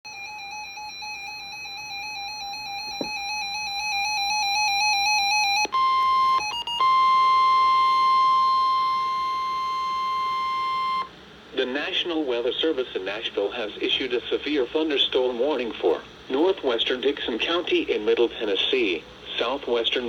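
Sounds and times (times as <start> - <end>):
electronic tone trilling: 0.1 - 11.1
steady high alarm beep: 0.1 - 11.1.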